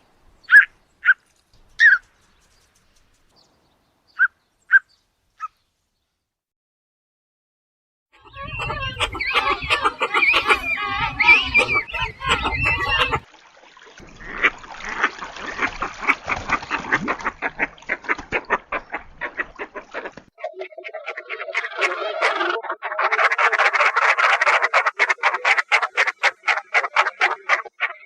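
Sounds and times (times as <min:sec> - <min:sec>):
shorebirds chattering calls: 0:08.2 - 0:13.2, 0:15.7 - 0:28.0.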